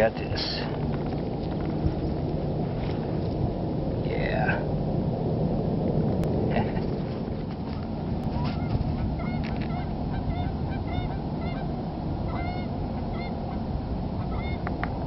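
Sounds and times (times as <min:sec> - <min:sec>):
geese honking: 0:08.3 - 0:14.7.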